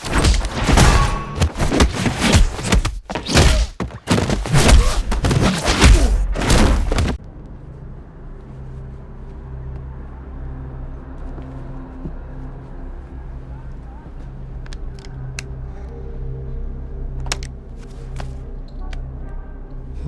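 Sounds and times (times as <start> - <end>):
punch and kick impacts: 0.0 - 7.2.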